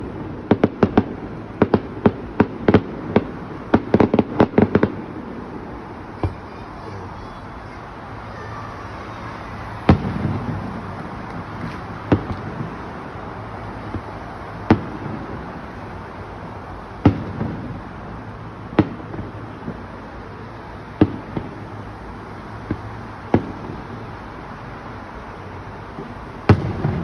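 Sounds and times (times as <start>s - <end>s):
background noise: 0.0s - 27.0s
firework shells bursting: 9.2s - 16.1s
small firework pops: 9.8s - 12.9s, 13.8s - 15.2s, 17.0s - 17.7s, 18.8s - 19.9s, 21.0s - 21.6s, 22.6s - 23.8s, 25.9s - 27.0s.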